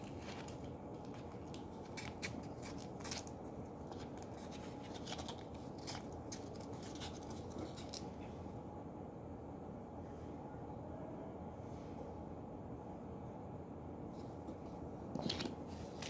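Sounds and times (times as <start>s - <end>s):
low background noise: 0.0s - 16.0s.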